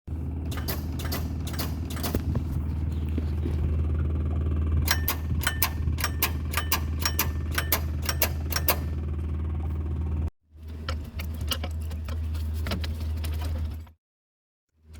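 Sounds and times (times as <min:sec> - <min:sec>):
steady low hum: 0:00.1 - 0:13.8
starter solenoid clicking rapidly: 0:00.4 - 0:02.6, 0:04.8 - 0:09.2.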